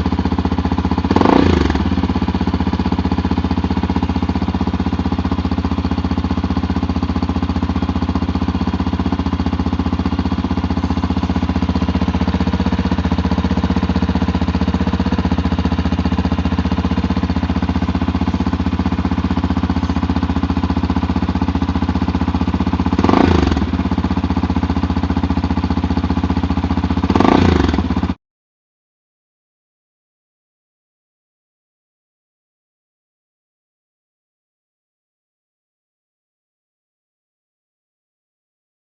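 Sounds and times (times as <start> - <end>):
motorcycle engine idling: 0.0 - 28.2.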